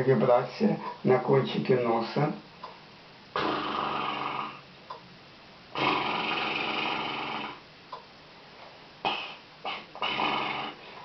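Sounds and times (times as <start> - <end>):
person snoring: 3.4 - 4.6, 5.7 - 7.6, 9.0 - 11.0.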